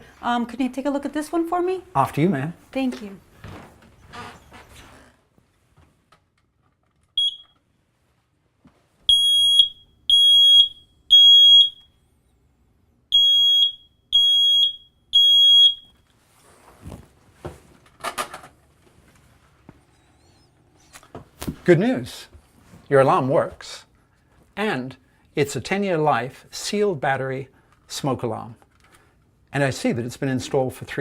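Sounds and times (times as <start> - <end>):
loud high smoke alarm beeps: 7.2 - 7.6, 9.1 - 12.0, 13.1 - 16.0
smoke alarm chirp: 7.2 - 7.6, 9.1 - 12.0, 13.1 - 16.0.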